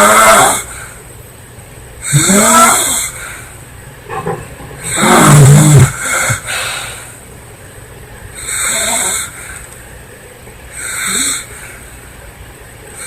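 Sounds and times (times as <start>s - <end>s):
hissing breaths: 2.1s - 7.2s.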